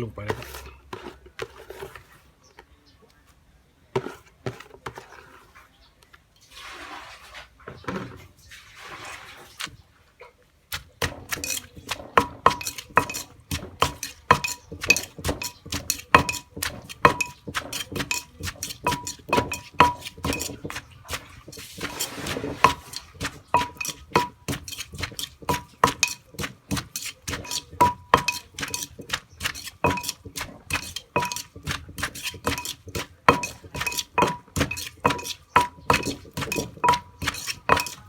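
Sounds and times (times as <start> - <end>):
scraping mix in a mortar: 0.0 - 38.0
pestle pounding in a mortar: 10.7 - 38.0.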